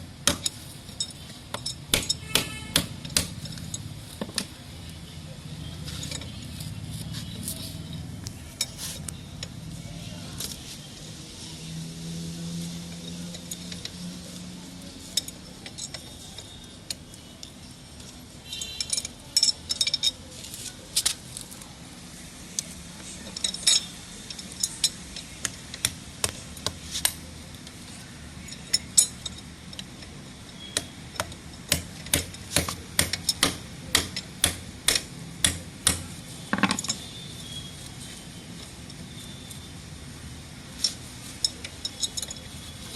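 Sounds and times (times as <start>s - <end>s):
hand tools tapping on pipe: 0.2s - 4.5s, 28.5s - 37.2s.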